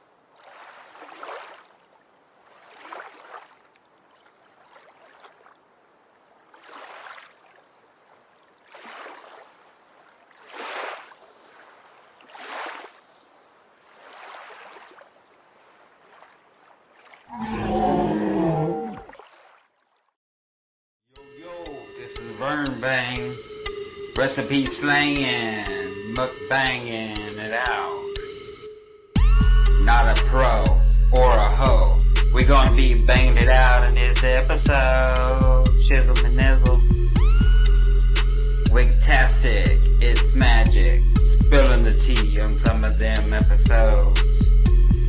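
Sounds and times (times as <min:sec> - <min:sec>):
loud roar with falling pitch: 0:17.3 - 0:19.1.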